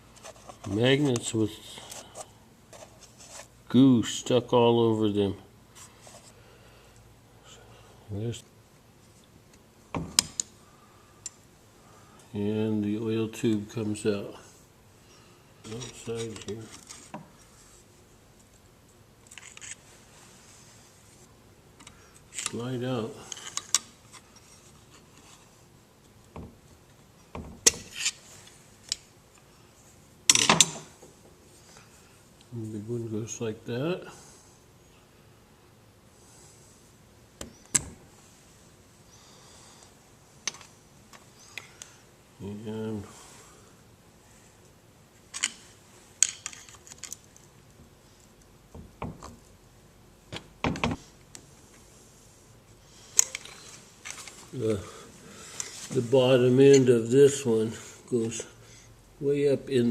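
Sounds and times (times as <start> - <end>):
metal parts clinking and knocking: 46.2 - 47.4.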